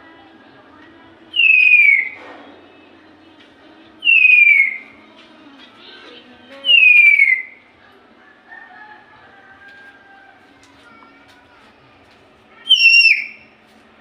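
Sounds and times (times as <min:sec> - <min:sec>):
parrot whistled call: 0:01.3 - 0:02.2, 0:04.0 - 0:04.8, 0:06.7 - 0:07.6, 0:12.7 - 0:13.4.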